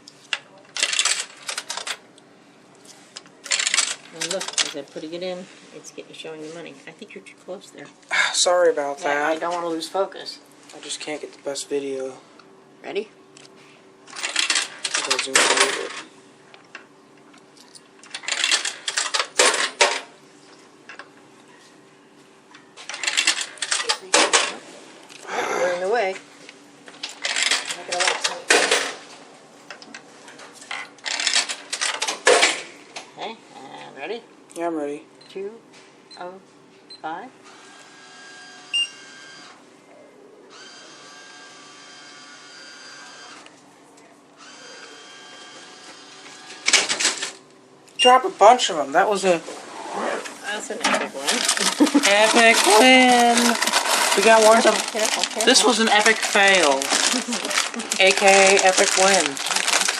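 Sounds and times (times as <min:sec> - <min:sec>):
coins clinking in vending machine: 0:00.7 - 0:02.0, 0:03.4 - 0:04.8, 0:14.1 - 0:16.1, 0:17.5 - 0:20.1, 0:22.8 - 0:24.5, 0:27.0 - 0:29.0, 0:30.7 - 0:32.6, 0:51.2 - 0:59.9
vending machine motor whining: 0:37.4 - 0:39.7, 0:40.4 - 0:43.6, 0:44.3 - 0:47.4, 0:50.2 - 0:59.9.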